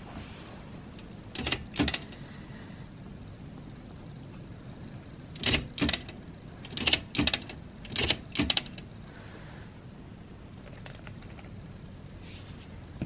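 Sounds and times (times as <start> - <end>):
typewriter keys clacking: 1.4 - 2.2, 5.4 - 8.8.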